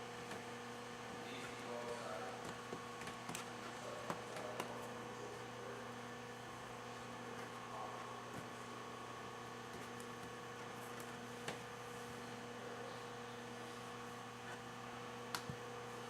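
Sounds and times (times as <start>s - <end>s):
electrical hum: 0.0s - 16.0s
faint clicks and taps: 2.4s - 4.9s.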